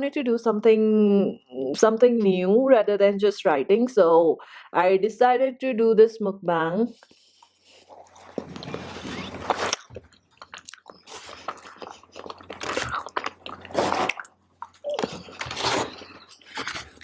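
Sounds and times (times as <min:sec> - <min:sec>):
person chewing fried rice: 0:07.3 - 0:17.0.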